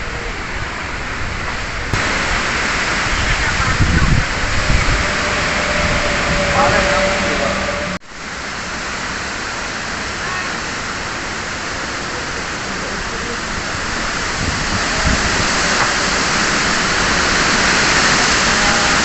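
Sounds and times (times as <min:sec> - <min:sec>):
low rumbles: 0:00.0 - 0:09.3
heavy rain pouring: 0:00.0 - 0:19.0.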